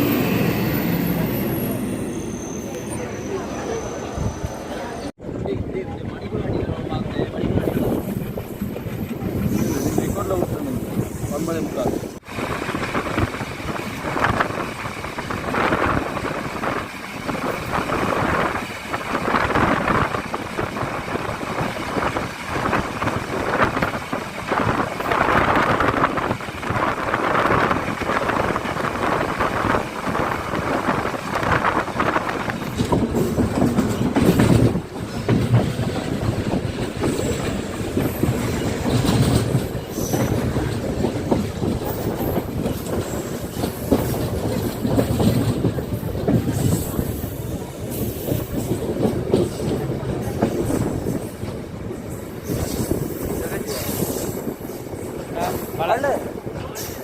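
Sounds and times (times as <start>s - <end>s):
train rumble: 0.0s - 57.0s
train wheels clattering: 12.7s - 57.0s.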